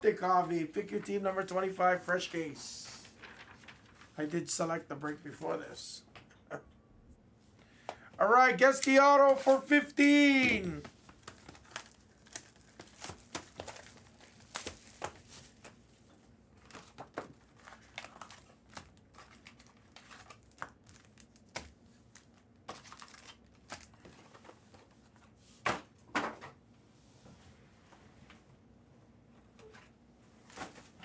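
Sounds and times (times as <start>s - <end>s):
pack wrappers crinkling and tearing: 11.1s - 15.8s, 16.7s - 24.0s.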